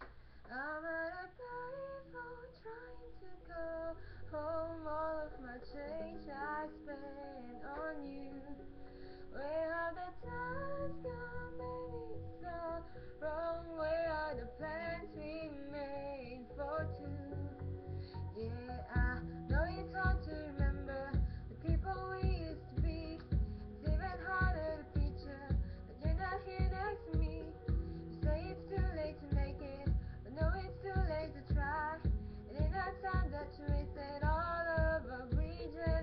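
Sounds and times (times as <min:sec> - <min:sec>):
woman singing pop melody: 0:00.5 - 0:36.0
backing track: 0:17.5 - 0:36.0
steady low beat: 0:19.0 - 0:36.0.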